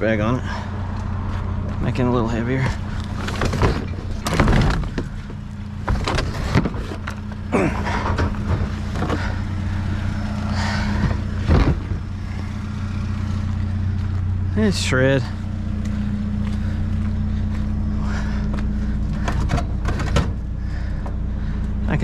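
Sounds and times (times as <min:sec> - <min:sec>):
vehicle engine idling: 0:00.0 - 0:22.0
thuds and clunks of heavy item: 0:03.1 - 0:09.5, 0:10.6 - 0:12.2, 0:19.2 - 0:20.4.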